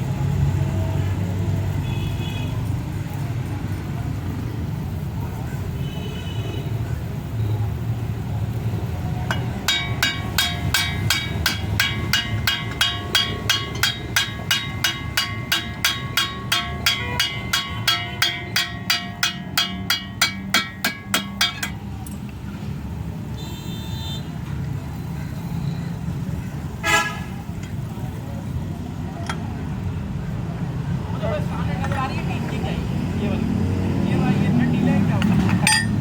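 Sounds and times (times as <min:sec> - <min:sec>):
low traffic rumble: 0:00.0 - 0:36.0
hammer striking metal: 0:09.2 - 0:22.2, 0:35.2 - 0:36.0.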